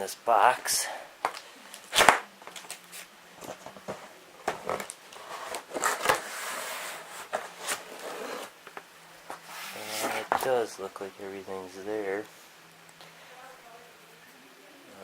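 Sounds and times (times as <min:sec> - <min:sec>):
cardboard packaging rustling: 0:01.2 - 0:10.8.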